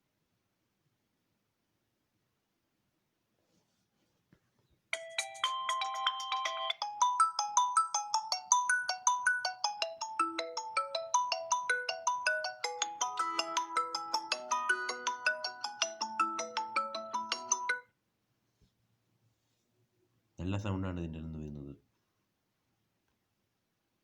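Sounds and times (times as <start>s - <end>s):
phone ringtone melody: 4.9s - 17.9s.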